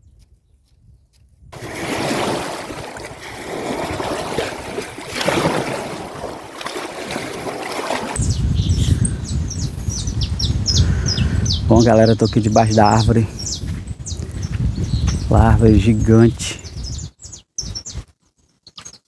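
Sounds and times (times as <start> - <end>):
water rushing and splashing: 1.6 - 8.3
birds chirping: 7.5 - 19.0.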